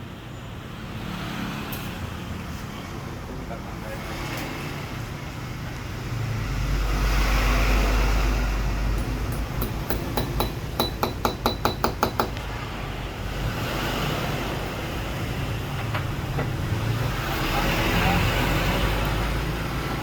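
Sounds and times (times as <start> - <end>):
sharp metallic taps: 8.9 - 12.5.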